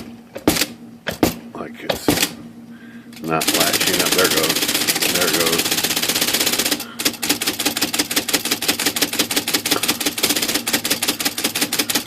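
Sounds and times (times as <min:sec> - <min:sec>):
typewriter mechanical clicks: 0:03.3 - 0:12.0.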